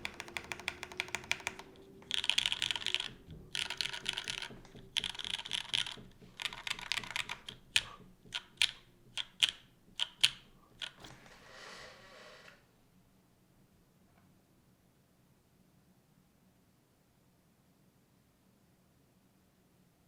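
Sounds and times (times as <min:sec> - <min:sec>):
keyboard keystrokes: 0:00.0 - 0:11.1.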